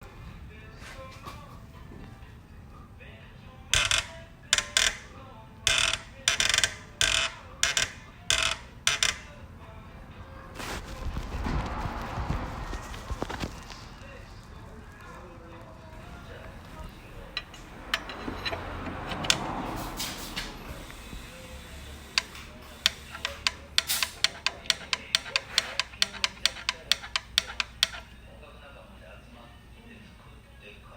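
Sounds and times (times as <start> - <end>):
belt tensioner rattling chatter: 3.7 - 9.4, 16.0 - 28.4
engine low hum: 16.0 - 22.8.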